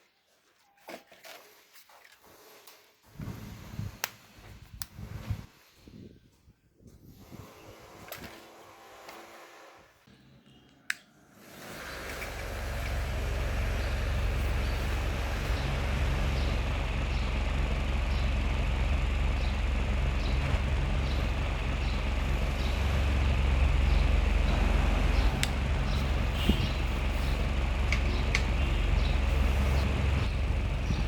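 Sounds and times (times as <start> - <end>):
small fan running: 11.4 - 31.0.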